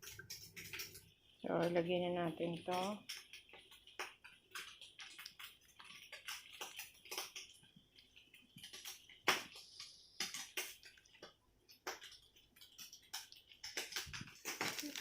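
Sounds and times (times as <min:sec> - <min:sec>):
kitchenware clicks and scrapes: 0:00.0 - 0:01.4.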